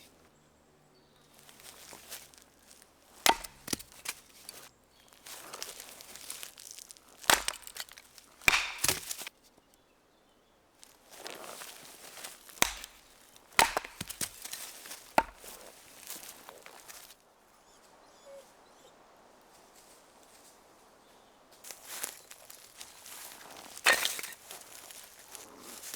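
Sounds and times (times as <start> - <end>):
rustling and scraping: 1.4 - 9.4, 11.1 - 17.2, 21.7 - 25.9
blade chopping wood: 3.2 - 4.6, 7.2 - 9.3, 12.5 - 15.7, 23.8 - 24.4.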